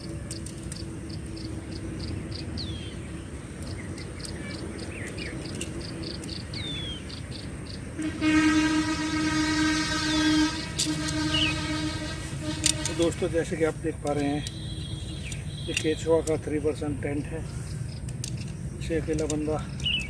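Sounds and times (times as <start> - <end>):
insects chirping: 0.0 - 20.0
loud vehicle horn blast: 8.0 - 13.5.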